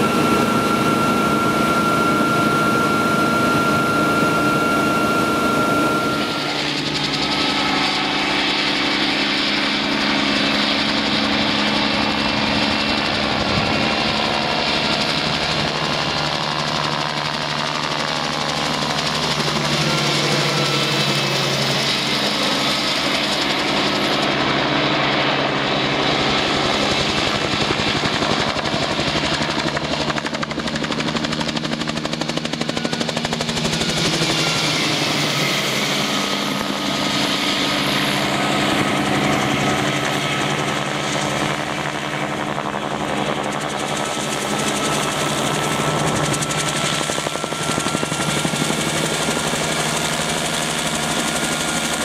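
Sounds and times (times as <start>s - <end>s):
helicopter in flight: 0.0s - 52.0s.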